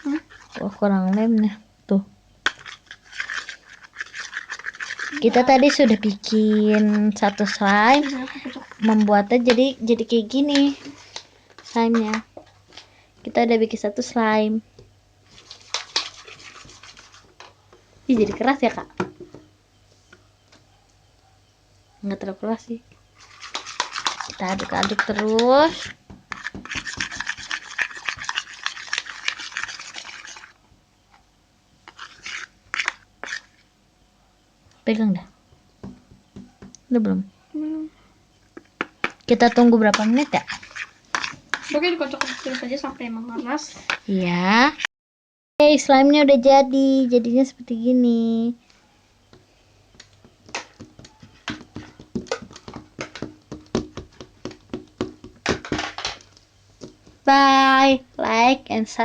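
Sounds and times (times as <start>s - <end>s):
spoon scraping slime: 0.0s - 1.6s, 2.4s - 12.6s, 15.3s - 17.5s, 23.1s - 30.6s, 31.8s - 33.7s, 38.6s - 43.1s, 49.9s - 55.2s.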